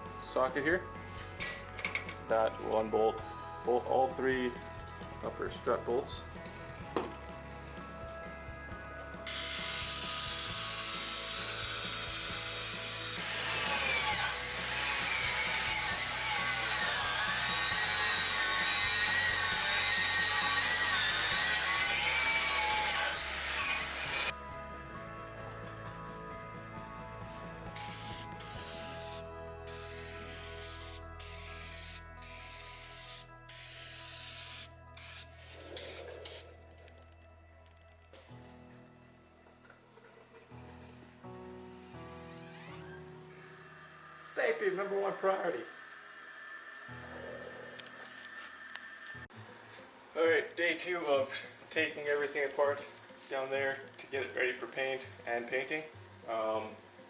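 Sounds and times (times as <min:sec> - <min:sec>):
background music: 0:00.0 - 0:57.0
spray paint hissing bursts: 0:09.3 - 0:13.0, 0:27.8 - 0:36.6
ratchet wrench ratcheting: 0:27.8 - 0:36.4.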